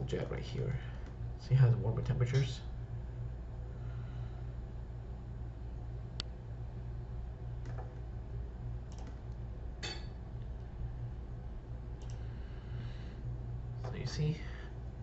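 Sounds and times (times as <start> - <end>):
steady low hum: 0.0 - 15.0
sharp clicks: 8.9 - 9.4.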